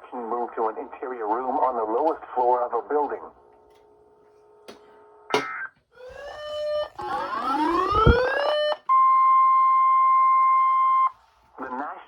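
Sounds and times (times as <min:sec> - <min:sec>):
electronic alert tones: 0:06.0 - 0:08.8
tone rising in pitch: 0:06.0 - 0:09.1.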